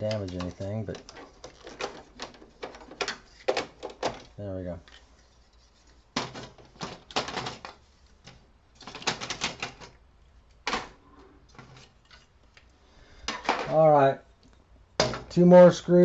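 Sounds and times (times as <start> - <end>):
printer parts clicking and rattling: 0.0 - 5.1, 6.2 - 10.0.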